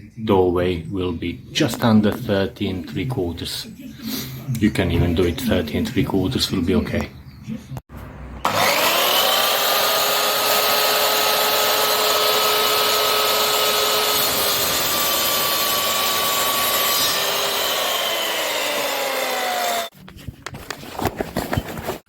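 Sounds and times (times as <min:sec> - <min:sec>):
mitre saw motor whine: 0:08.4 - 0:19.9.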